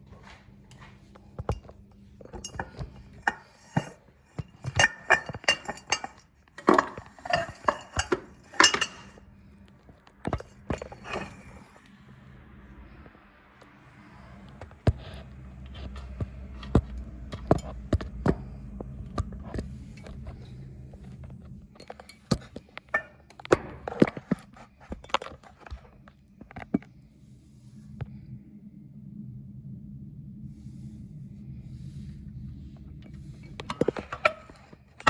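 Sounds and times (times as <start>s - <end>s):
low steady hum: 0.0s - 35.0s
objects clicking and knocking: 0.7s - 9.2s, 10.2s - 11.6s, 21.8s - 25.8s, 33.5s - 35.0s.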